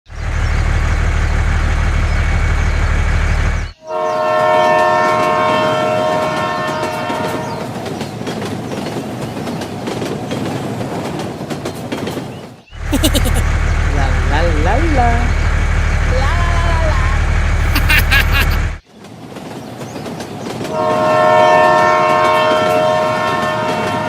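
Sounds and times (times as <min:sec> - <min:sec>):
train horn chord: 0:03.8 - 0:07.5, 0:20.7 - 0:24.0
train wheels clattering over rail joints: 0:07.8 - 0:12.6.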